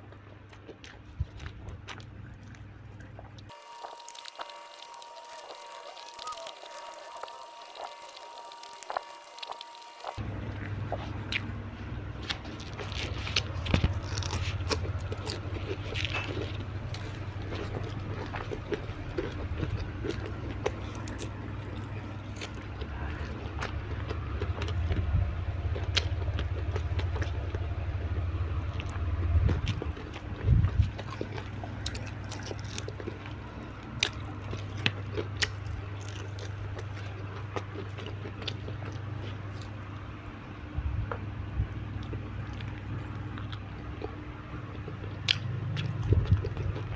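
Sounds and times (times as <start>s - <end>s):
steady low hum: 3.5s - 10.9s
person chewing and crunching food: 12.2s - 25.1s, 34.0s - 39.8s.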